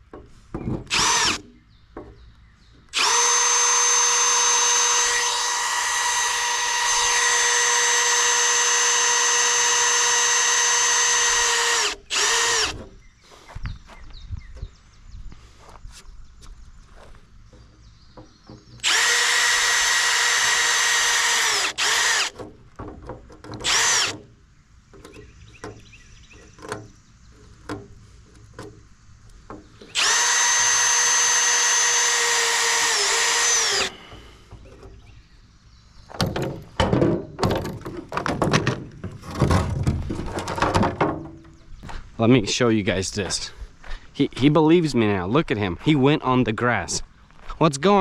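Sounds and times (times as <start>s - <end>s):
knocking and clattering of parts: 0.0s - 2.9s, 17.5s - 18.9s, 22.3s - 28.8s, 36.1s - 42.6s
power tool motor running: 0.9s - 1.4s, 3.0s - 12.8s, 18.8s - 22.4s, 23.6s - 24.2s, 29.9s - 34.2s.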